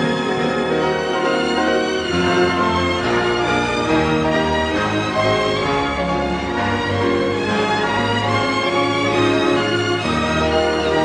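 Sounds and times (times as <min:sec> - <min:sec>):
orchestral string music: 0:00.0 - 0:11.0.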